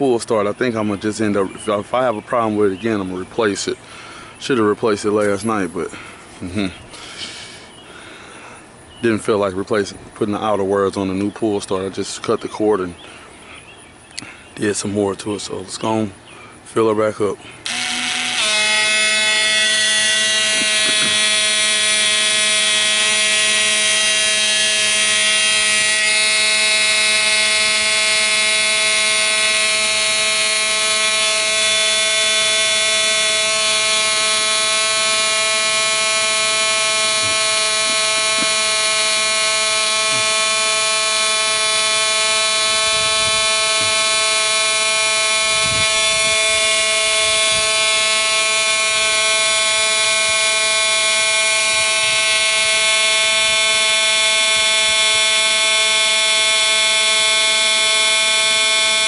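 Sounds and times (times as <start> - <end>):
electric fuel pump buzzing: 0.0 - 8.8, 17.6 - 59.0.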